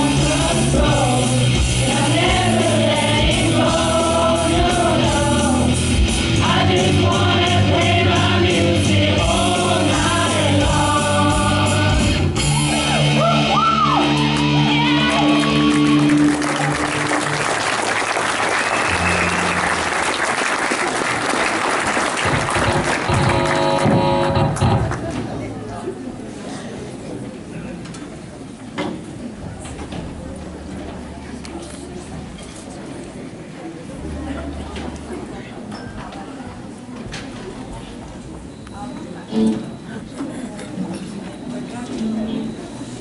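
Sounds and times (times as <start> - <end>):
person singing with backing music: 0.0 - 13.2
audience applause: 14.2 - 25.1.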